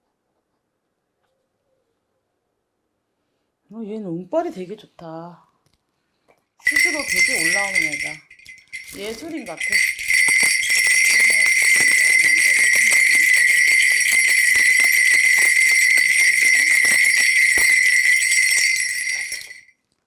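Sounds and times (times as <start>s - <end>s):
ritual bells jingling: 6.6s - 19.7s.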